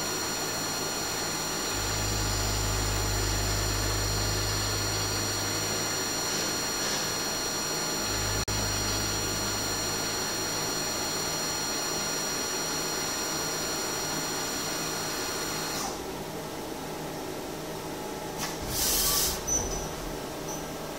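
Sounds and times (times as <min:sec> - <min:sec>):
lathe machine noise: 0:00.0 - 0:15.8
high steady machine whines: 0:00.0 - 0:20.9
low hum: 0:01.6 - 0:11.8.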